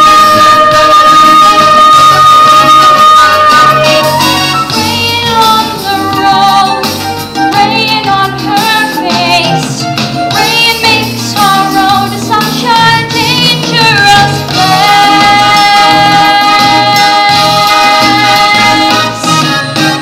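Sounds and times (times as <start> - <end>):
instrumental accompaniment: 0.0 - 20.0.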